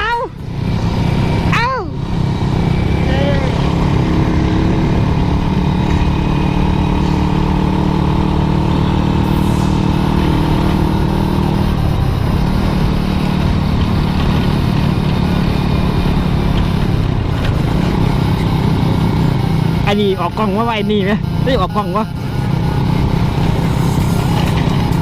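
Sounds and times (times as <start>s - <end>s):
constant rush of noise: 0.0s - 25.0s
motorcycle engine cruising: 0.0s - 25.0s.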